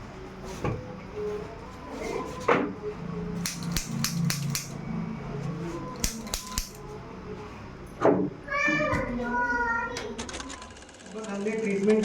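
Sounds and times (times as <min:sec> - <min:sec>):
sharp clicks: 0:03.4 - 0:04.8, 0:06.0 - 0:06.8.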